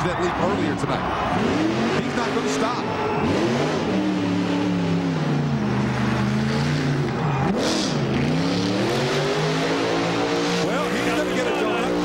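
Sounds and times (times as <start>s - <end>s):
monster truck engine revving: 0.4s - 12.0s.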